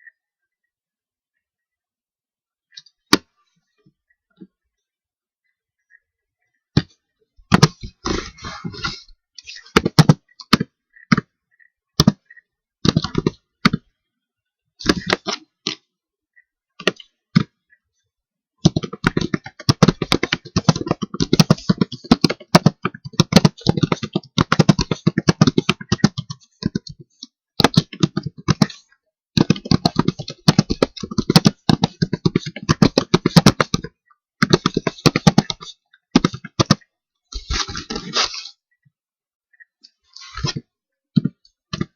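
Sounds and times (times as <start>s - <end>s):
typing on computer keyboard: 18.6s - 27.0s, 29.4s - 36.8s.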